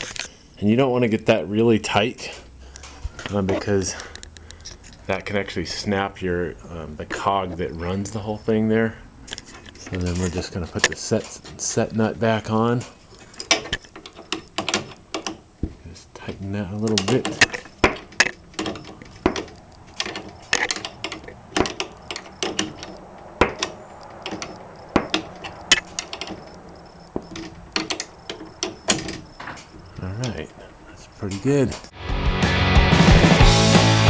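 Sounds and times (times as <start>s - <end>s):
wrench clicking on metal: 3.9s - 5.1s, 12.5s - 15.5s, 16.7s - 30.4s
loud rock music: 32.0s - 34.0s.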